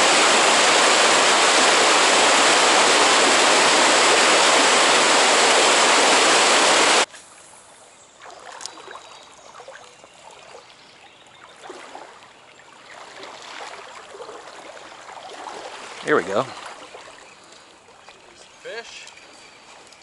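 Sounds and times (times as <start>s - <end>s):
loud rushing water: 0.0s - 7.1s
stream trickling and gurgling: 0.0s - 20.0s.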